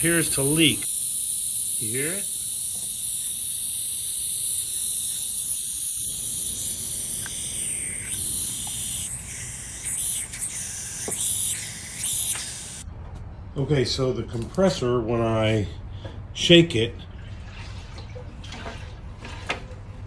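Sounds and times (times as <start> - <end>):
compressed air hissing from a leak: 0.0 - 12.9.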